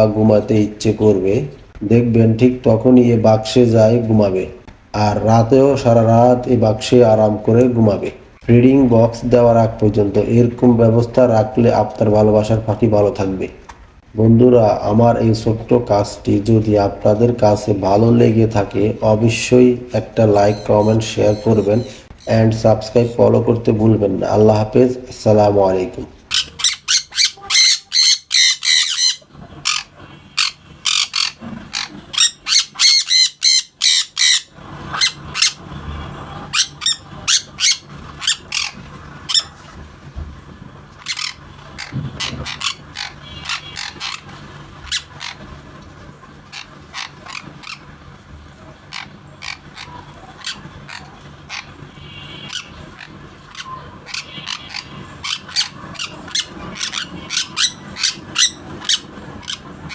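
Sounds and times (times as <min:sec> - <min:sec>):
parrot shrill squawks: 0:20.0 - 0:22.4, 0:26.3 - 0:35.6, 0:36.5 - 0:39.5, 0:41.0 - 0:44.3, 0:48.9 - 0:59.9
parrot short sharp calls: 0:20.4 - 0:22.4, 0:26.3 - 0:31.4, 0:32.2 - 0:35.6.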